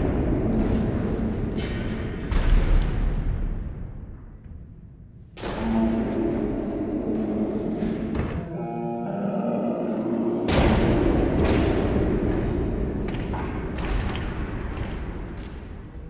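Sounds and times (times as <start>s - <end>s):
heavy booming impacts: 5.4s - 8.7s, 10.0s - 15.2s.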